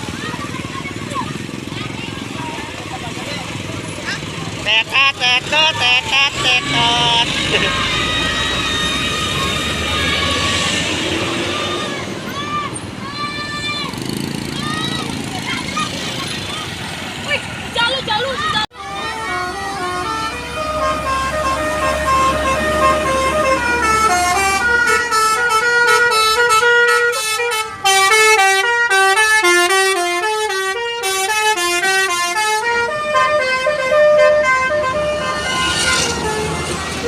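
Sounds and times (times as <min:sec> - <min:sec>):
melodic bus horn tune: 0:04.6 - 0:10.7, 0:18.7 - 0:37.0.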